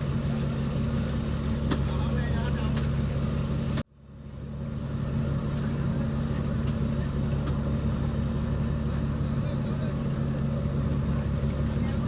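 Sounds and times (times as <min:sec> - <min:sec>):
boat engine droning: 0:00.0 - 0:03.8, 0:05.0 - 0:12.0.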